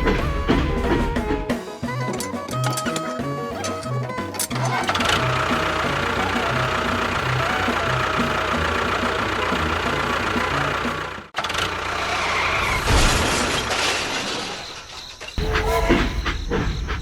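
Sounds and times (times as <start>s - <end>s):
small motor rattling: 2.1s - 12.7s.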